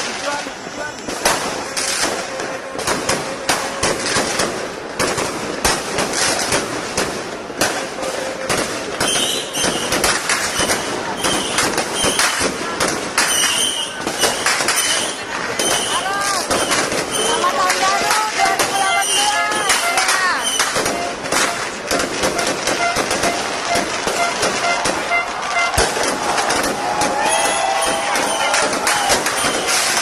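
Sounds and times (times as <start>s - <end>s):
fireworks cracks and pops: 0.0s - 30.0s
short high squeals: 19.0s - 21.1s.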